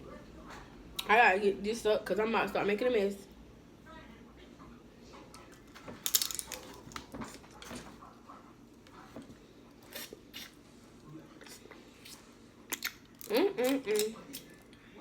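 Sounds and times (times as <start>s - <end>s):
crab shell cracking: 6.0s - 7.0s.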